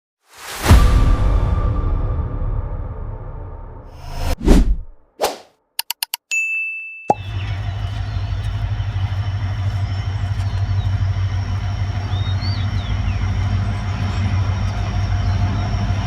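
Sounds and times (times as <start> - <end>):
locomotive diesel engine running: 7.2 - 16.0.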